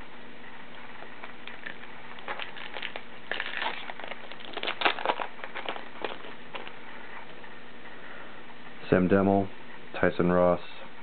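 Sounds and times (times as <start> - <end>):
wrapper crinkling and tearing: 1.2 - 6.8.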